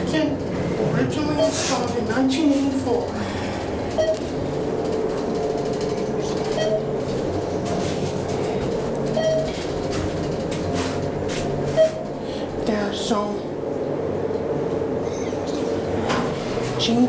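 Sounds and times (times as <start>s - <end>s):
elevator car running: 0.0s - 17.0s
short beep: 6.5s - 6.9s, 11.7s - 12.1s.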